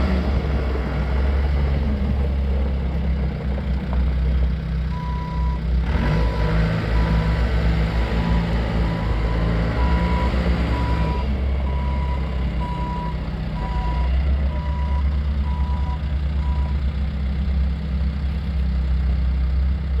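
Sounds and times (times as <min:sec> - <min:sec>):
diesel engine running: 0:00.0 - 0:20.0
backup alarm beeping: 0:08.9 - 0:16.8.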